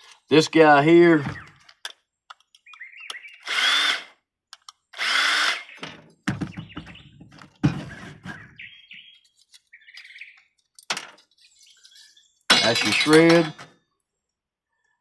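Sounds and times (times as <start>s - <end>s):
power drill whining: 3.2s - 4.2s, 4.9s - 5.8s
metal parts clattering: 10.7s - 13.7s.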